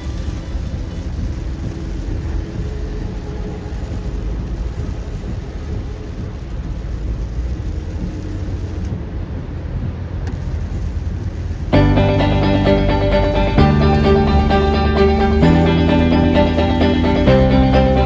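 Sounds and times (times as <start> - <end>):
heavy rain on a car: 0.0 - 9.0, 9.9 - 12.2.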